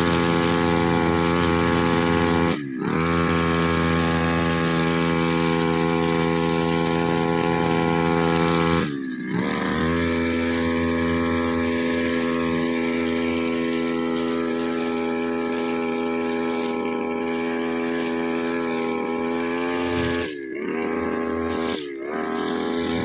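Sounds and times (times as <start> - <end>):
brushcutter engine running: 0.0 - 23.0.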